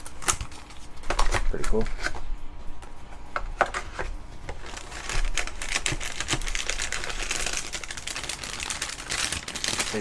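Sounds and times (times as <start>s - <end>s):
papery plastic rustle: 3.6s - 10.0s.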